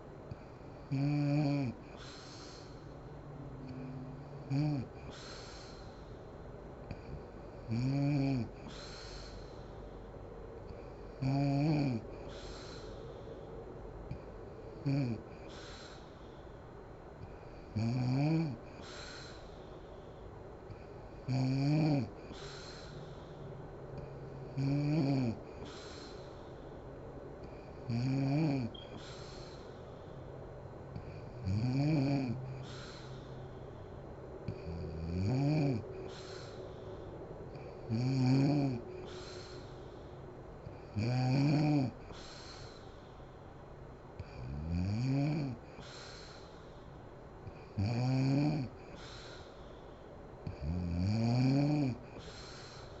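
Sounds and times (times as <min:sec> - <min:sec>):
woman snoring: 0:00.0 - 0:02.9, 0:03.6 - 0:06.0, 0:06.9 - 0:09.4, 0:10.7 - 0:12.9, 0:14.1 - 0:15.3, 0:17.2 - 0:19.4, 0:20.7 - 0:22.9, 0:24.0 - 0:26.2, 0:27.4 - 0:29.8, 0:31.0 - 0:33.2, 0:34.5 - 0:36.6, 0:37.5 - 0:39.7, 0:40.6 - 0:42.9, 0:44.2 - 0:46.2, 0:47.5 - 0:49.4, 0:50.5 - 0:53.0
breathy hiss: 0:00.0 - 0:53.0.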